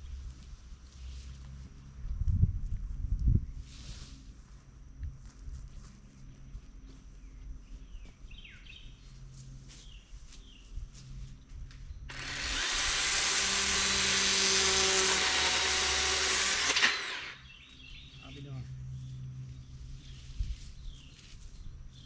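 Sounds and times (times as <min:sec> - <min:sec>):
electric chainsaw whining: 0:12.1 - 0:17.6.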